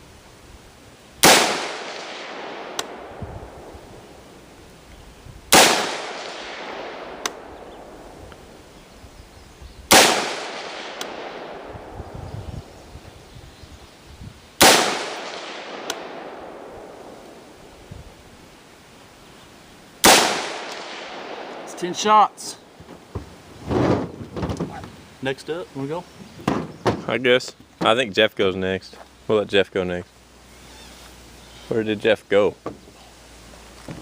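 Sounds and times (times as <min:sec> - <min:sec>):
rifle shots echoing: 0:01.2 - 0:04.2, 0:05.5 - 0:08.7, 0:09.9 - 0:12.8, 0:14.6 - 0:17.7, 0:20.0 - 0:22.8
small sharp crack: 0:02.7 - 0:03.0, 0:07.2 - 0:07.4, 0:10.0 - 0:11.2, 0:15.3 - 0:16.1.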